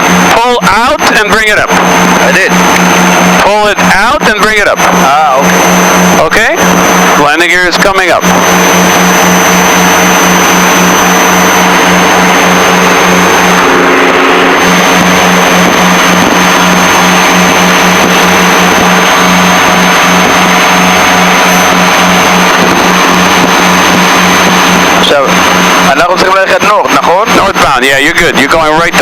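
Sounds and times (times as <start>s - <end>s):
propeller plane engines droning: 0.0s - 29.0s.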